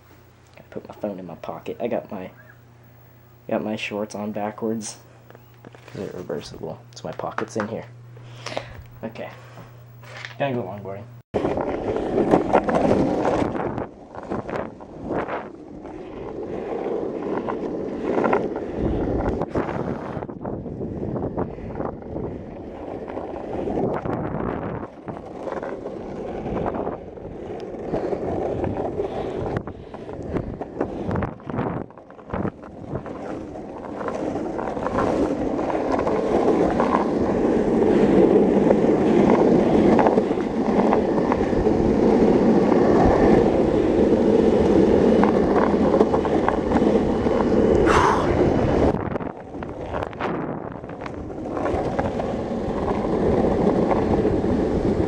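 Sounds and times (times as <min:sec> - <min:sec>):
wheels rolling over pavement: 0:00.6 - 0:02.6, 0:03.5 - 0:07.9, 0:09.0 - 0:55.0
wind on microphone: 0:11.3 - 0:55.0.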